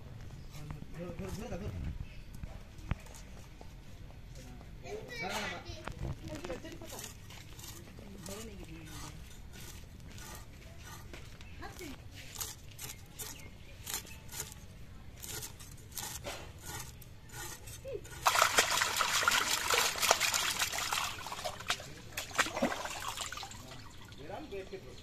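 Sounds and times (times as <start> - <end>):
water pouring and splashing: 18.1 - 24.4.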